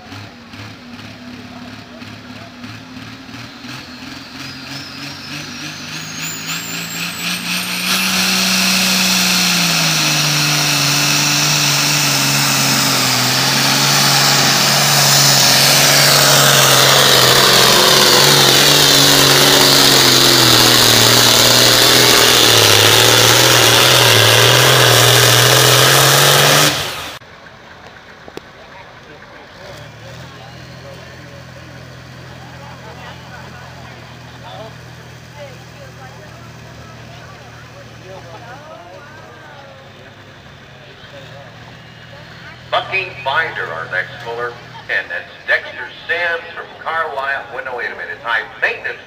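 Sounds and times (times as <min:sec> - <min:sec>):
diesel engine at full power: 0:00.0 - 0:49.0
turbo whistle: 0:03.7 - 0:10.0.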